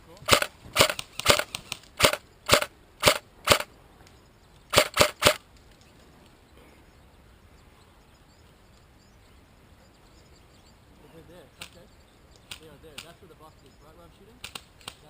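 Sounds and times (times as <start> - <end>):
airsoft gun shots: 0.2 - 3.7, 4.7 - 5.4.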